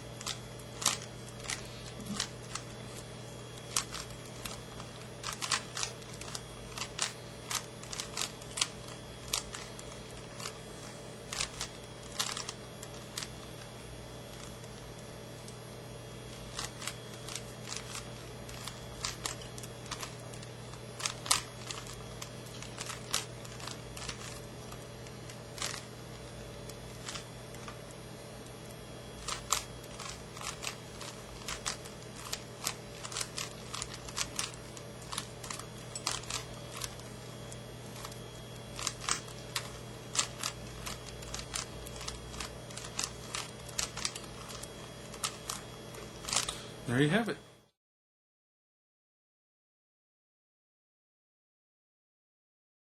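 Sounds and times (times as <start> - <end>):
steady low hum: 0.0 - 47.7
puzzle cube clicking: 0.2 - 2.7, 3.7 - 10.6, 11.3 - 12.6, 21.0 - 24.4, 29.2 - 37.1.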